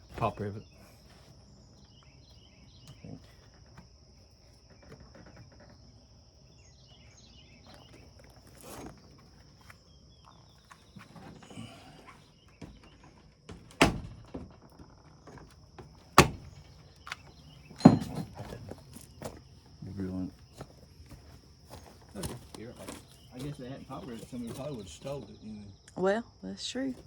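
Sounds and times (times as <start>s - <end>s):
crickets trilling: 0.0s - 27.0s
loud sharp knocks: 16.2s - 16.7s.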